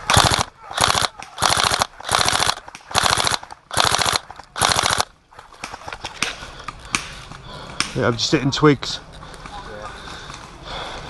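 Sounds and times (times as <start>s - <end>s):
airsoft rifle bursts: 0.0s - 5.1s.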